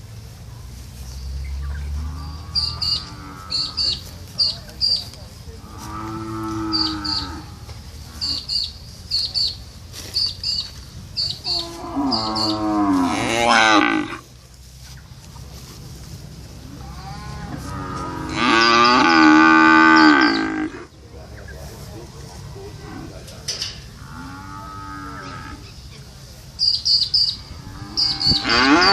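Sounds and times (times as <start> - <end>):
cattle mooing: 5.6 - 8.4, 11.5 - 14.2, 16.7 - 20.9, 24.0 - 25.6, 27.4 - 28.9.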